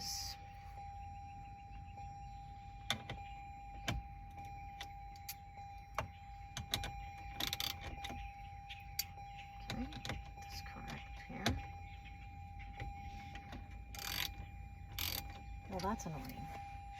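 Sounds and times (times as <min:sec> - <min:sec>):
faint steady tone: 0:00.0 - 0:16.9
ratchet clicks and knocks: 0:13.9 - 0:15.4.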